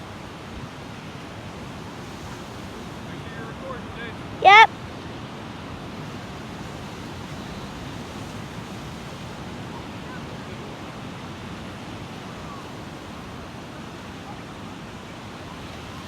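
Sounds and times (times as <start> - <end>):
wind: 0.0 - 16.0
surf rushing: 2.1 - 4.7.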